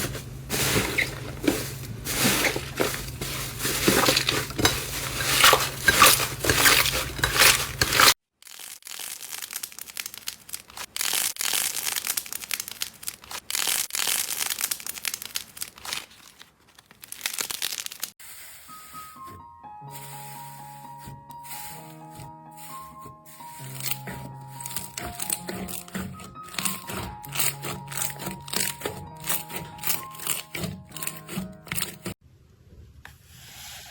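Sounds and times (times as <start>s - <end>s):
slime crackling and popping: 7.8s - 18.2s.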